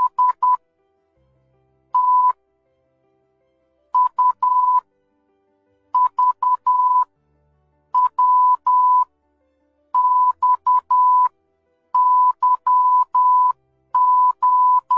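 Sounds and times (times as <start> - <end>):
morse code beeps: 0.0 - 0.6, 2.0 - 2.4, 4.0 - 4.8, 6.0 - 7.1, 8.0 - 9.1, 10.0 - 11.3, 12.0 - 14.9.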